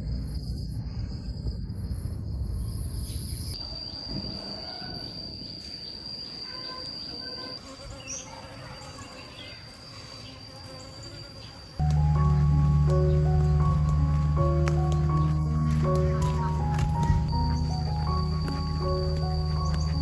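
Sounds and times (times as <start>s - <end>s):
low rumble: 0.0s - 3.6s, 11.8s - 20.0s
insects droning: 0.0s - 20.0s.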